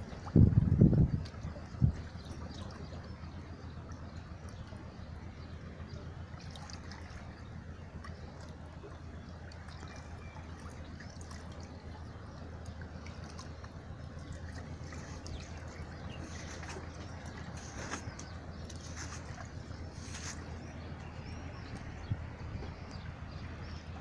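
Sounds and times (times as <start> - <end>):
seawater lapping and trickling: 0.0 - 24.0
steady low rumble: 0.0 - 24.0
water drips: 8.0 - 21.1.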